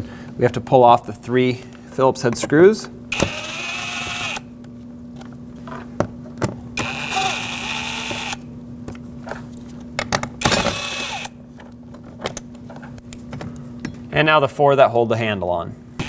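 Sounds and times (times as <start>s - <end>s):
power screwdriver whirring: 3.1s - 4.5s, 6.8s - 8.4s, 10.4s - 11.4s.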